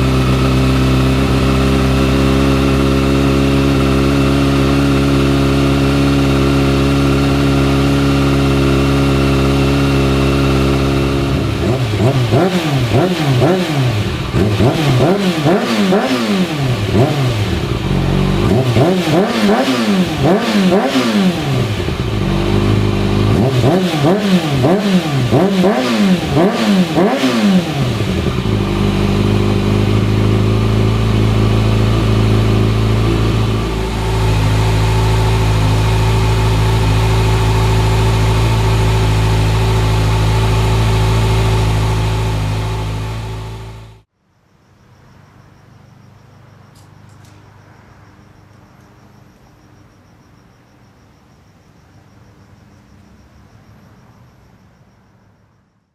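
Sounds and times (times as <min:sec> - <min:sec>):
motorcycle engine revving and idling: 0:00.0 - 0:44.1
crickets chirping: 0:44.2 - 0:55.9.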